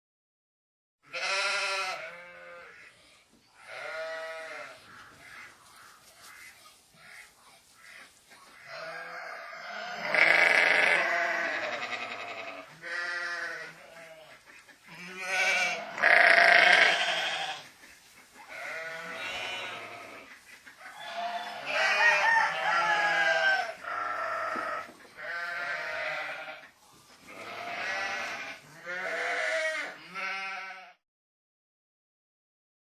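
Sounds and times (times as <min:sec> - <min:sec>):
sheep bleating: 0:01.0 - 0:02.9, 0:03.6 - 0:05.5, 0:08.6 - 0:17.6, 0:18.5 - 0:26.7, 0:27.3 - 0:31.0.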